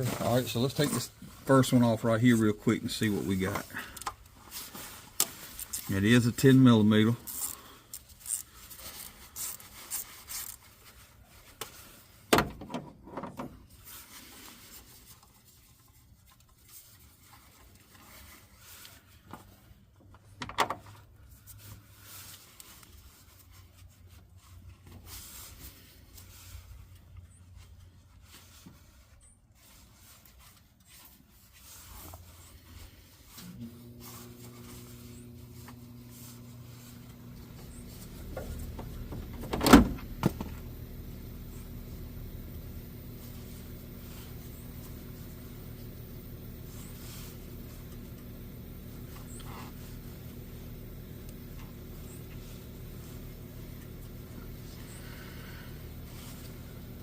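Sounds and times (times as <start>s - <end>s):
wrench rubbing and handling: 3.4s - 12.2s
steady low hum: 32.3s - 57.0s.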